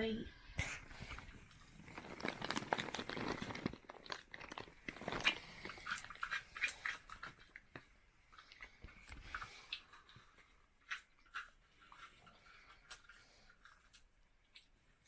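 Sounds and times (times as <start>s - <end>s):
crunching candy in mouth: 0.6s - 7.6s.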